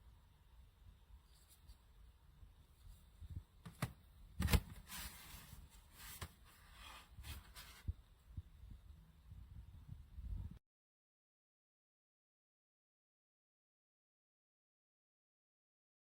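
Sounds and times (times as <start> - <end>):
rustling: 4.4 - 7.9.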